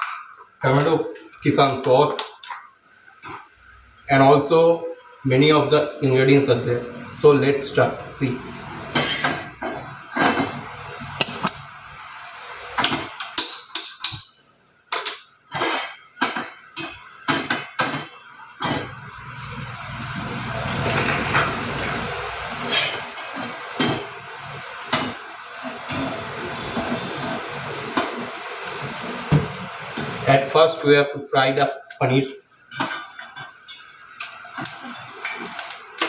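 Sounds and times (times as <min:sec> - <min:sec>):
steady hiss: 0:03.0 - 0:14.5, 0:19.0 - 0:32.7
cookware clattering: 0:13.4 - 0:14.3, 0:14.9 - 0:15.3.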